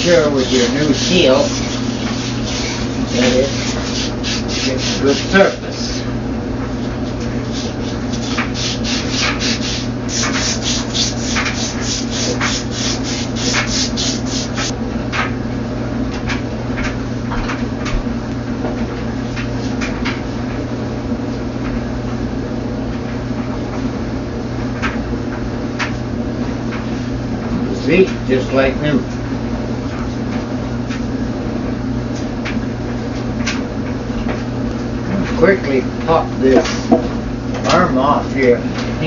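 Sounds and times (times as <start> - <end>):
emery cloth scraping metal shaft: 0.0 - 5.9
steady low hum: 0.0 - 39.0.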